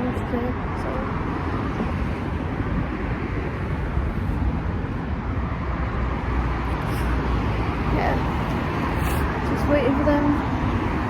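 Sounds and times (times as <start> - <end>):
vehicle rumble and hiss: 0.0 - 11.0.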